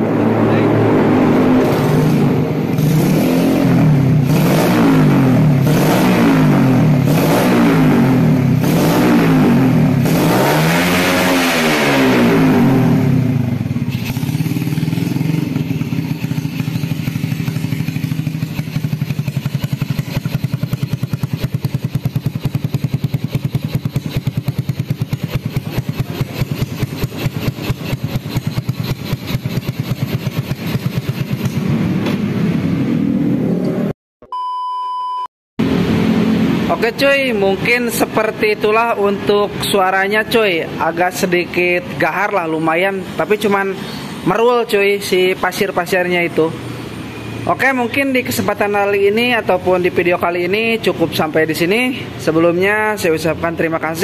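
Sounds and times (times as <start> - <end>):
motorcycle engine revving and idling: 0.0 - 33.9, 35.6 - 54.0.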